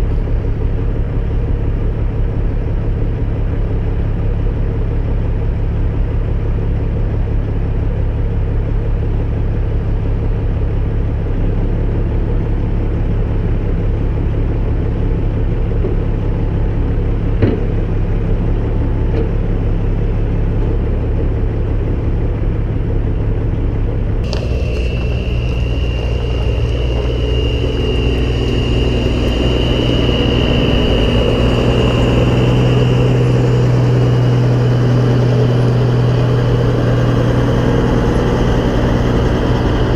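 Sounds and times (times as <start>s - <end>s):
diesel engine rumbling: 0.0s - 39.9s
high whine: 24.1s - 39.9s.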